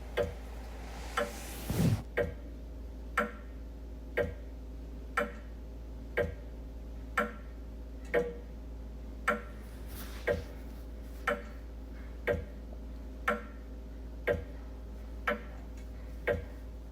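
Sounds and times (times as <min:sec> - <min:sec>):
steady low hum: 0:00.0 - 0:02.9
wall clock ticking: 0:04.2 - 0:04.5, 0:05.2 - 0:05.5, 0:06.1 - 0:06.5, 0:07.2 - 0:07.5, 0:08.1 - 0:08.4, 0:09.2 - 0:09.6, 0:11.2 - 0:13.6, 0:14.2 - 0:14.6, 0:15.2 - 0:16.7.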